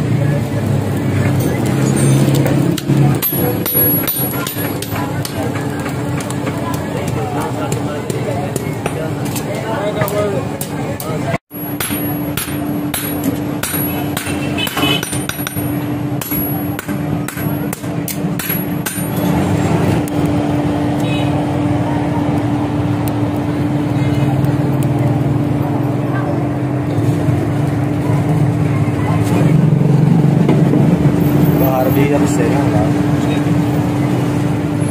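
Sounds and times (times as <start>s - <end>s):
hammer striking steel: 1.4s - 19.4s.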